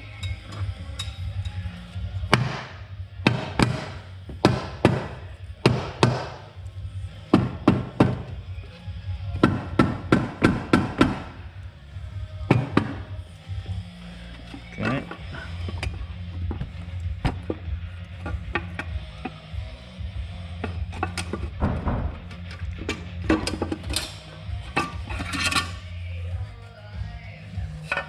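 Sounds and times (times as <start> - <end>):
background music: 0.0 - 28.0
metallic knocks and clanks: 12.5 - 13.2, 20.6 - 25.8.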